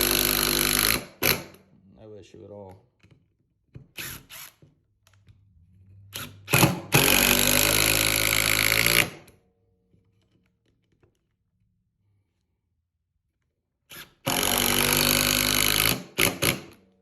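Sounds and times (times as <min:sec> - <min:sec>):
impact driver hammering: 0:00.0 - 0:01.6, 0:06.1 - 0:09.4, 0:14.0 - 0:16.8.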